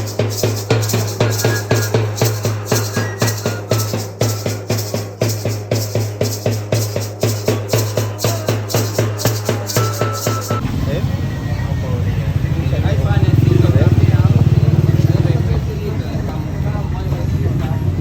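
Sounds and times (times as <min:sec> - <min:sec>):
music with fast drum beat: 0:00.0 - 0:10.6.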